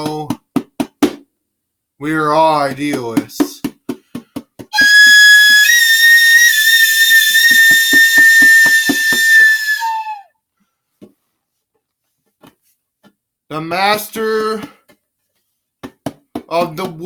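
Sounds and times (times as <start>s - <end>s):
hand drum beat: 0.0s - 1.2s
high whistle: 4.8s - 10.3s.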